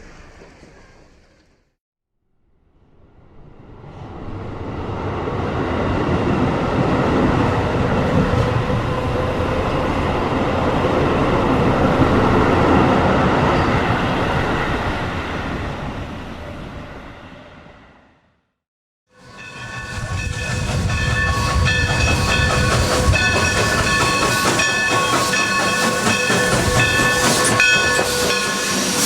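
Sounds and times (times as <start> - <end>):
train wheels on rails: 0.0 - 1.7, 19.2 - 29.0.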